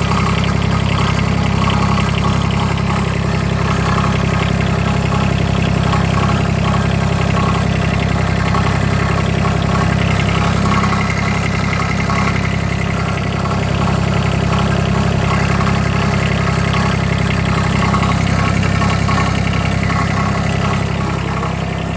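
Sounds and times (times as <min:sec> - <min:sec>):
diesel engine idling: 0:00.0 - 0:21.9
fast even rattle: 0:00.0 - 0:21.9.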